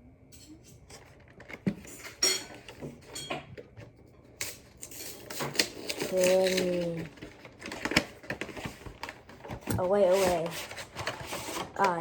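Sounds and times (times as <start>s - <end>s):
card packaging crinkling: 4.0s - 12.0s.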